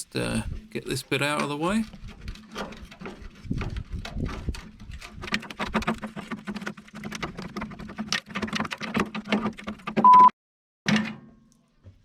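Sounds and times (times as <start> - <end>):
rusty metal crackling and scraping: 0.0 - 10.0.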